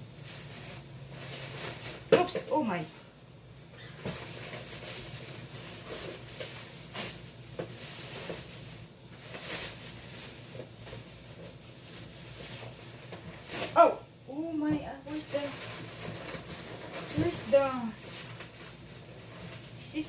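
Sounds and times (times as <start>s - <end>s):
plastic bag rustling: 0.0s - 20.0s.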